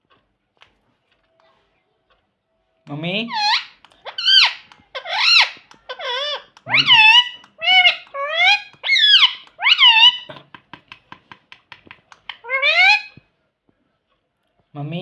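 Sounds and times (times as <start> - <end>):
parrot squawking: 3.2 - 10.3, 12.2 - 13.2.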